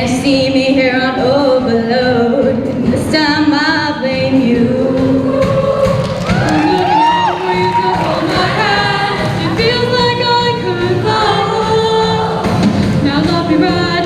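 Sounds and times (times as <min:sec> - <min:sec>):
choir singing in harmony: 0:03.2 - 0:14.0.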